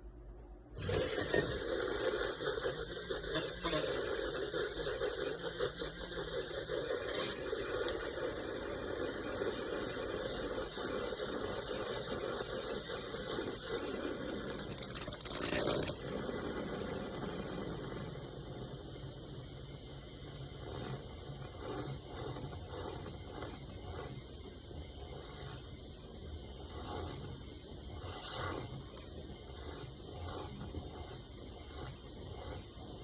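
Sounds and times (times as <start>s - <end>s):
handheld milk frother running: 0.8s - 33.0s.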